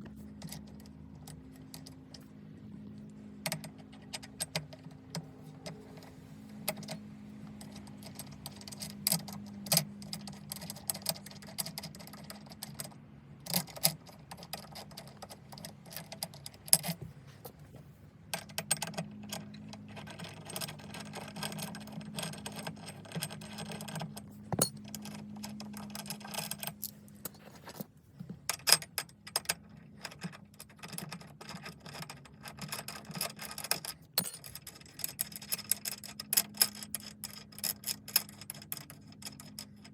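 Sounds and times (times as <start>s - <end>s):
steady low hum: 0.0s - 29.1s
metallic tool clicks and clinks: 24.6s - 24.8s, 34.2s - 34.6s.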